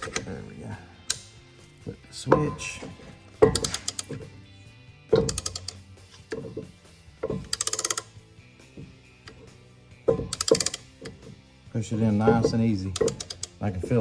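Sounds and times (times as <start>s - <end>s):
ratchet wrench clicking: 1.0s - 1.8s, 3.4s - 4.3s, 5.1s - 9.5s, 10.1s - 11.2s, 12.3s - 13.6s.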